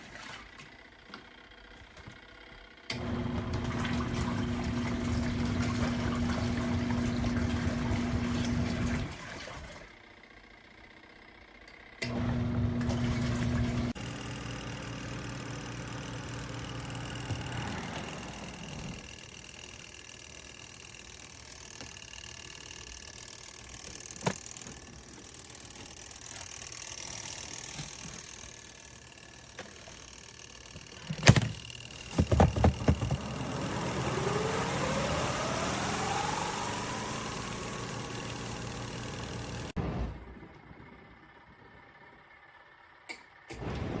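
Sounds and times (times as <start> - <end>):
washing machine motor humming: 0.0 - 44.0
motor whine rising in pitch: 12.0 - 42.2.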